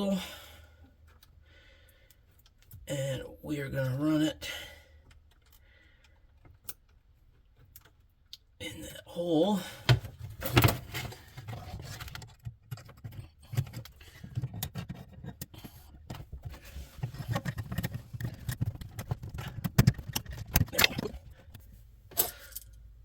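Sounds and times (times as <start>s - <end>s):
cable scraping and rubbing: 10.2s - 21.7s.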